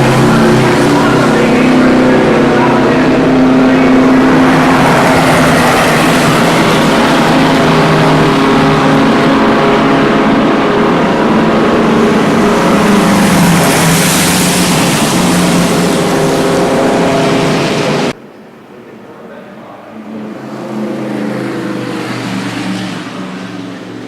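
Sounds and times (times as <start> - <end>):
race car engine at high revs: 0.0 - 18.2, 19.8 - 24.0.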